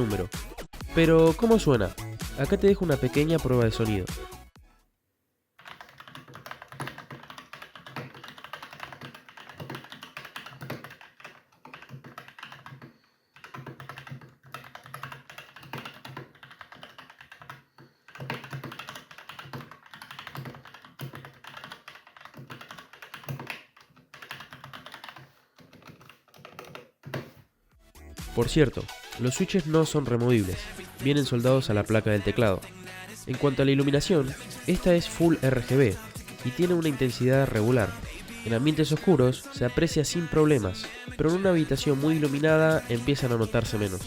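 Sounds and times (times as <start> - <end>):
mechanical keyboard typing: 5.6 - 27.3.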